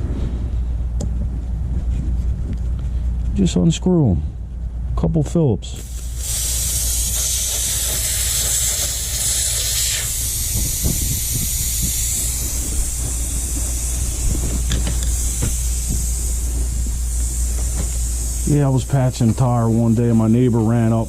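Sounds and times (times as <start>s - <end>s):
air hissing out of tire: 5.8s - 20.6s.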